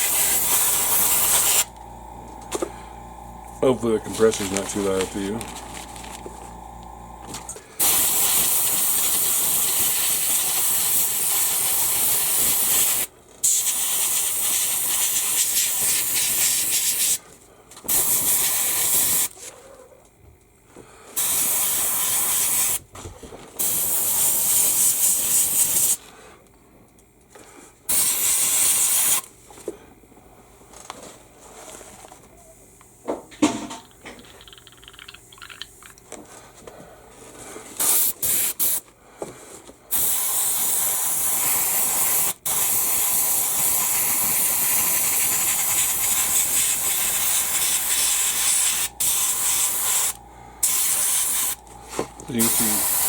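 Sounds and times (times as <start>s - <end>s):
airbrush air hiss: 0.0s - 17.2s, 17.9s - 19.3s, 21.2s - 22.8s, 37.8s - 38.8s, 39.9s - 53.0s.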